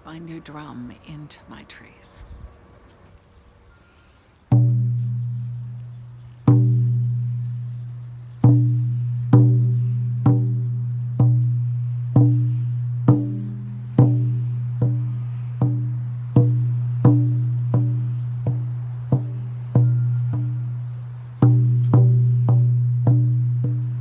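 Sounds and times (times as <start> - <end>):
hand drum beats: 4.5 - 24.0.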